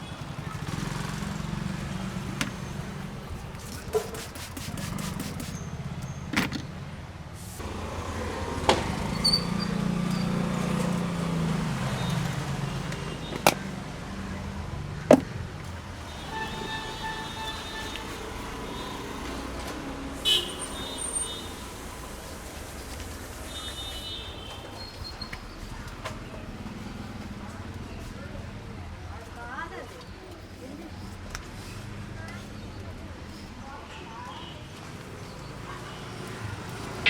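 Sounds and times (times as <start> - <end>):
street traffic rumbling: 0.0 - 37.0
vehicle horn: 16.0 - 21.9, 23.4 - 24.8.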